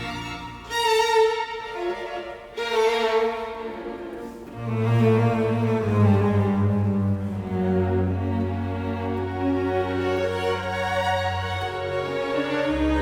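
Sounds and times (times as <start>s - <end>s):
bowed strings melody: 0.0s - 13.0s.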